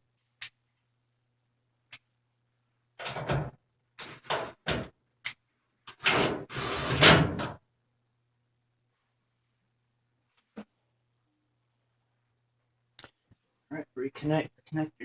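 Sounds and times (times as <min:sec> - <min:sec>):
scraping slide: 0:06.0 - 0:07.5
short scrapes and knocks: 0:06.0 - 0:07.5.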